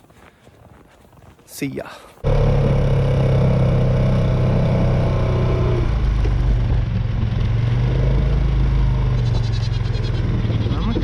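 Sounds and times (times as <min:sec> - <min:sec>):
atv engine running: 0:02.2 - 0:11.0.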